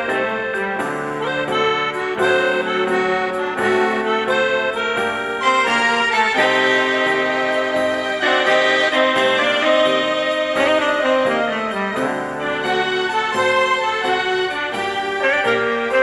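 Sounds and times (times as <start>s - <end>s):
instrumental backing music: 0.0s - 16.0s
light percussion beat: 0.0s - 16.0s.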